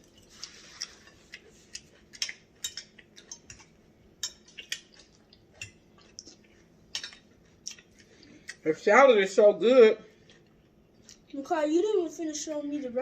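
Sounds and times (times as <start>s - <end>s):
faint chewing: 0.0s - 8.6s, 10.1s - 11.4s
cutlery and dishes clinking: 2.2s - 5.8s, 7.0s - 7.2s.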